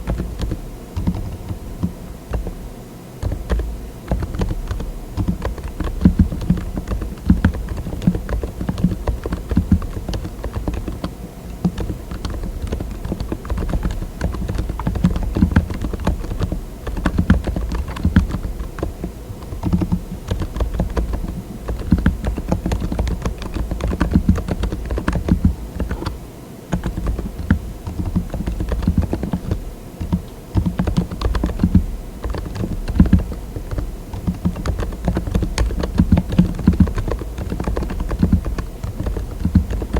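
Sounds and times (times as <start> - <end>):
mechanical keyboard typing: 0.0 - 2.6, 3.2 - 39.9.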